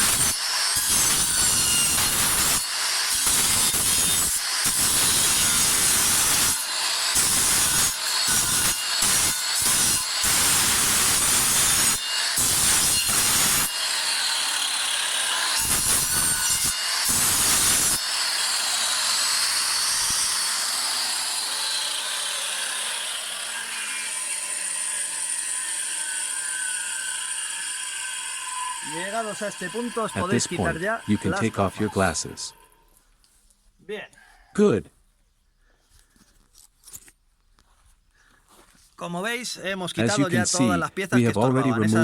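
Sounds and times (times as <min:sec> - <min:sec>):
rotary tool grinding: 0:00.0 - 0:33.0.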